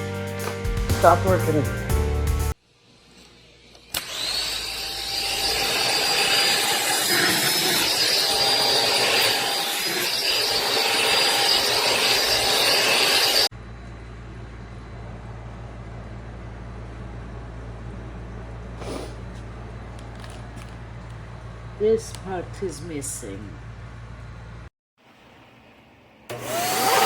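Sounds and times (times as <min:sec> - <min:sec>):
vacuum motor whining: 0:03.7 - 0:13.5, 0:26.3 - 0:27.0.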